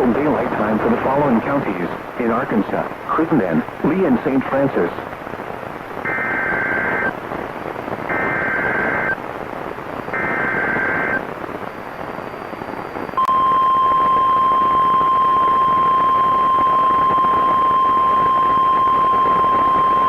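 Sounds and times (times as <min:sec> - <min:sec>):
radio hiss: 0:00.0 - 0:20.0
screeching two-tone data bursts: 0:06.1 - 0:07.1, 0:08.1 - 0:09.2, 0:10.2 - 0:11.2, 0:13.2 - 0:20.0
steady warning alarm tone: 0:06.1 - 0:07.1, 0:08.1 - 0:09.2, 0:10.1 - 0:11.2, 0:13.2 - 0:20.0.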